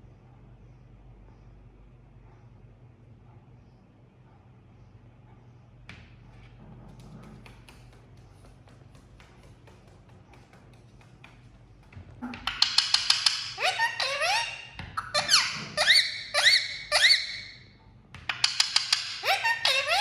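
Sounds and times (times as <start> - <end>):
parrot squawking: 12.2 - 17.7, 18.3 - 20.0.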